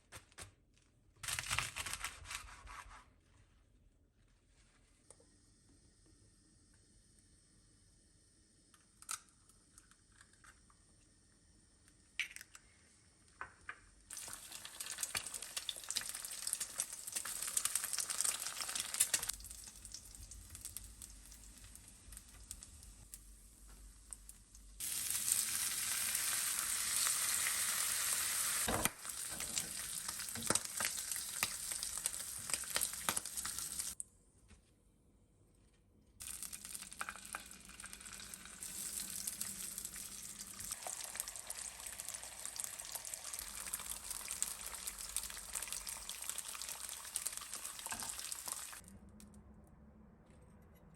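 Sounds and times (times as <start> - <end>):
bacon sizzling in a frying pan: 14.1 - 34.0, 36.2 - 48.8.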